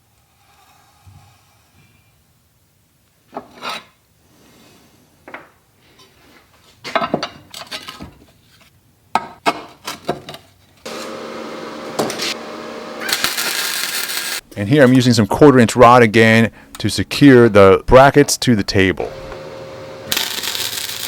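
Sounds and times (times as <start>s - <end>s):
steady machine hum: 10.9s - 14.5s, 19.0s - 21.0s.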